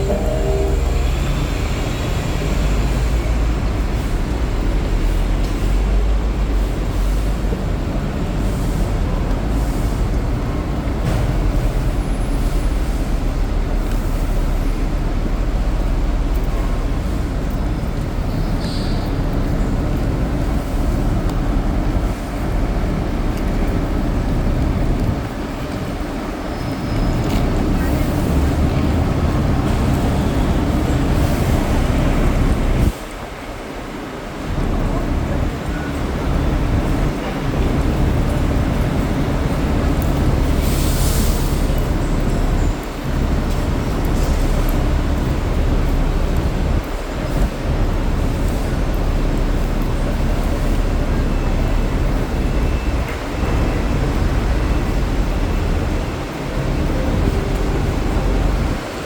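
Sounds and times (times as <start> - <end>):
heavy vehicles rumbling: 0.0 - 59.0.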